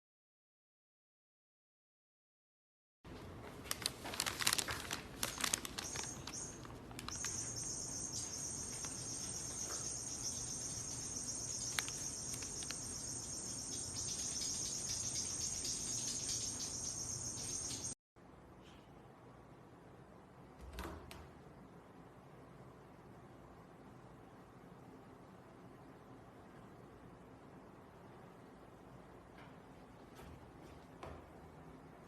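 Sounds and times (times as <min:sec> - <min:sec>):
high-pitched insect chorus: 0:05.8 - 0:18.0.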